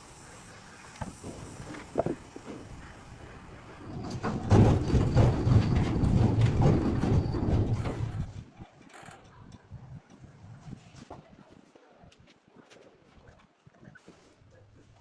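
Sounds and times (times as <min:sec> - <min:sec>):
loud rattling machine: 0:03.8 - 0:08.3.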